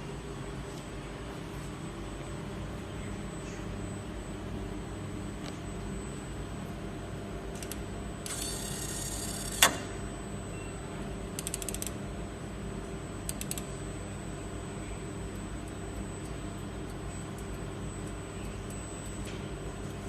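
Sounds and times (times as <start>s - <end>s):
machine hum: 0.0s - 20.0s
mechanical clicks and ratcheting: 11.4s - 12.0s, 13.3s - 13.7s.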